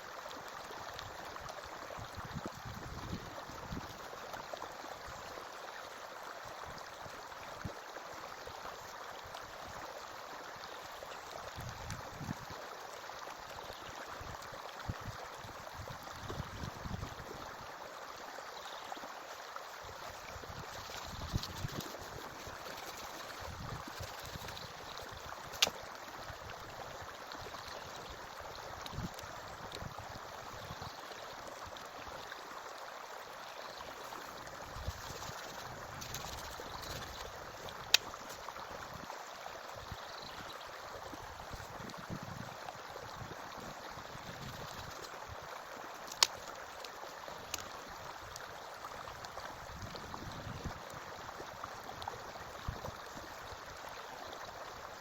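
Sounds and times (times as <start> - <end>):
stream flowing: 0.0 - 55.0.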